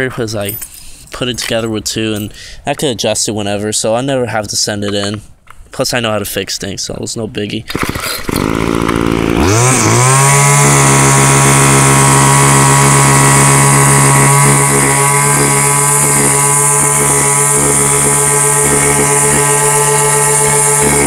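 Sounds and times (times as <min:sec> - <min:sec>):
small two-stroke engine revving: 0:07.7 - 0:21.0.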